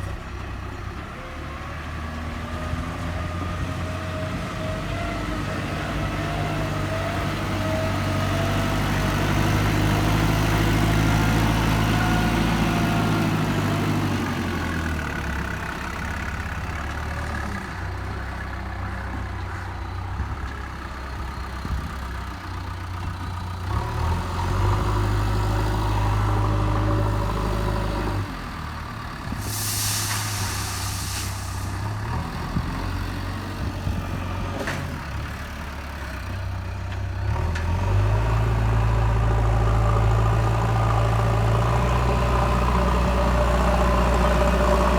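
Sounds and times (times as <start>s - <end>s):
diesel engine working: 0.0s - 44.9s
short hiss: 29.4s - 32.0s.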